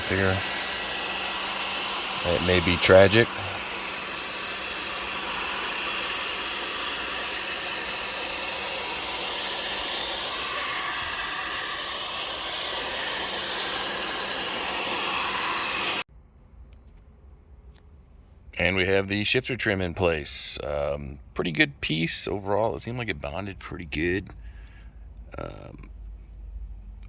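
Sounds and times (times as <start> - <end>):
hot-air blower running: 0.0 - 16.1.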